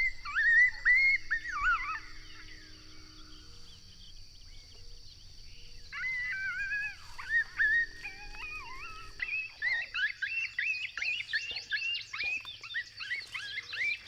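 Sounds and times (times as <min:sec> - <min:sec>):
coyotes howling and yipping: 0:00.0 - 0:14.0.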